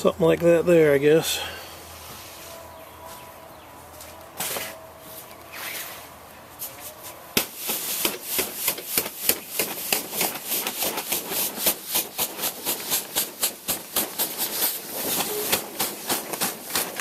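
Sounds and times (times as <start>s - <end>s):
snow scraping strokes: 7.6s - 17.0s.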